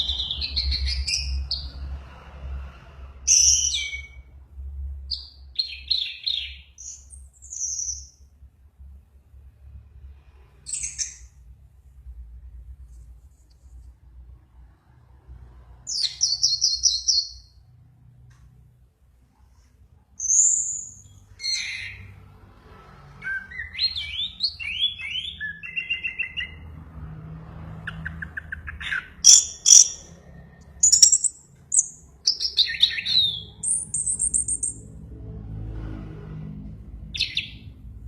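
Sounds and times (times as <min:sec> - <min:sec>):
songbird singing: 0:00.0 - 0:01.8, 0:03.3 - 0:04.2, 0:05.0 - 0:08.3, 0:10.7 - 0:11.4, 0:15.9 - 0:17.7, 0:20.2 - 0:22.1, 0:23.2 - 0:26.7, 0:27.8 - 0:34.9, 0:37.1 - 0:37.7.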